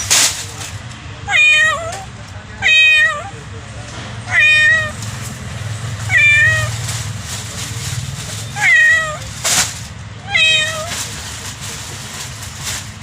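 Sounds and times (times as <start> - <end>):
kitten meowing: 1.3 - 3.4, 4.3 - 5.0, 6.0 - 6.8, 8.5 - 9.3, 10.2 - 11.0.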